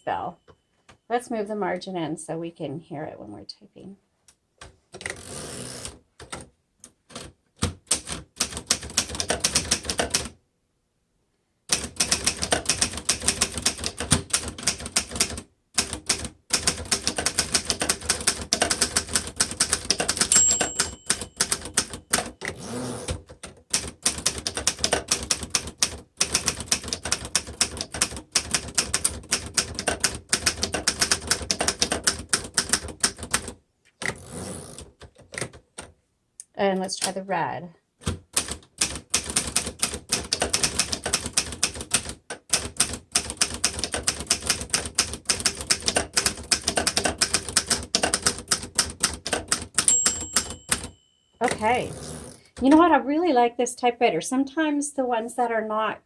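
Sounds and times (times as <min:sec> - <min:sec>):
manual typewriter typing: 0:07.1 - 0:10.3, 0:11.7 - 0:35.9, 0:38.0 - 0:51.6
typewriter carriage bell: 0:16.9 - 0:23.2, 0:49.5 - 0:51.8.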